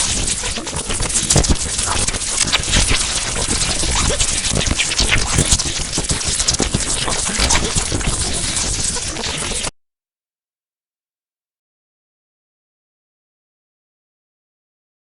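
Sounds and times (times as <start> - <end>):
electric sparks crackling: 0.0 - 9.7.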